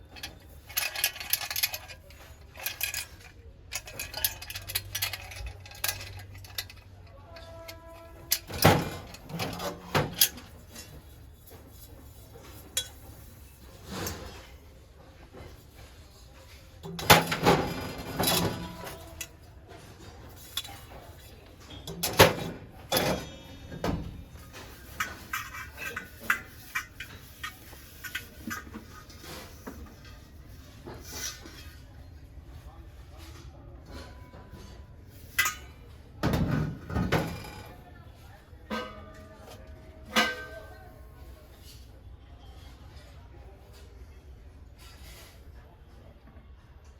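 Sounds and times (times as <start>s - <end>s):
brass utensils knocking and clattering: 0.0s - 14.5s, 16.8s - 19.5s, 20.3s - 30.1s, 34.5s - 37.7s, 38.7s - 40.8s.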